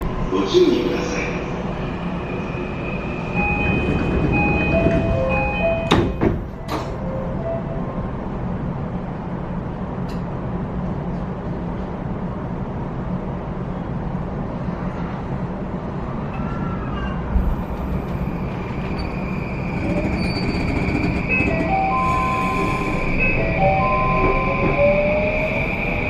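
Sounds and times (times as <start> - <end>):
train running rumble: 0.0 - 26.0.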